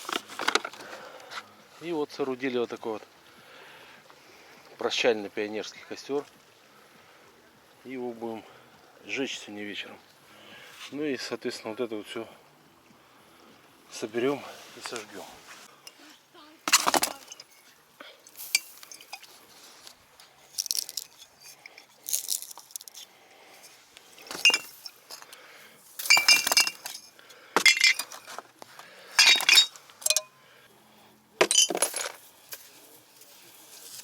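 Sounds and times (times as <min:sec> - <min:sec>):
glass bottles clinking: 0:16.7 - 0:17.7, 0:18.3 - 0:19.3, 0:24.2 - 0:25.2, 0:26.0 - 0:28.3, 0:29.2 - 0:30.4, 0:31.4 - 0:32.2.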